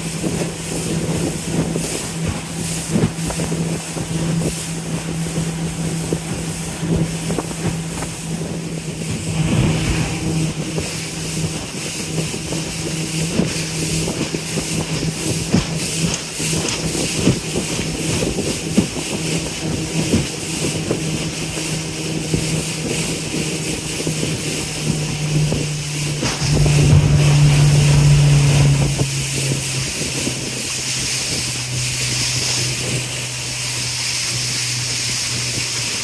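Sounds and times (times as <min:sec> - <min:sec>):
boat engine humming: 0:00.0 - 0:36.0
rushing air and water: 0:08.8 - 0:36.0.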